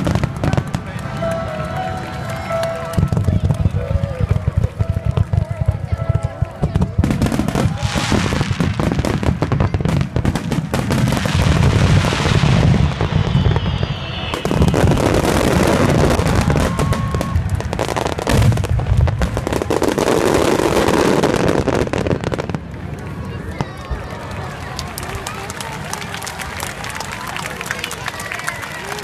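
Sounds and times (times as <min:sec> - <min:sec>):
fireworks booming and crackling: 0:00.0 - 0:24.1
fireworks whistling: 0:07.0 - 0:22.0.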